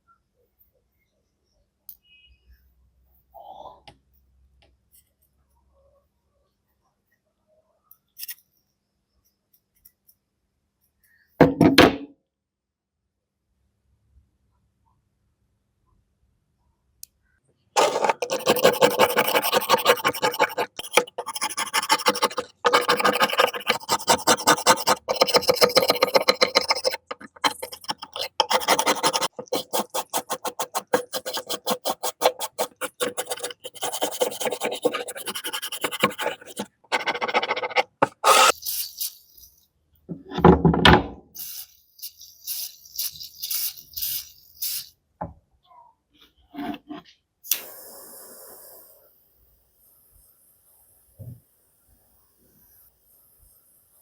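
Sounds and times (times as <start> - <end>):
metal rasping and scraping: 17.8 - 38.6.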